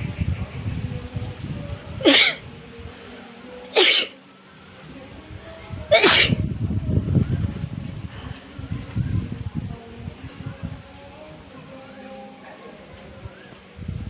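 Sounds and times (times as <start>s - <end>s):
woman sneezing: 2.0s - 2.4s, 3.8s - 4.2s, 5.9s - 6.4s.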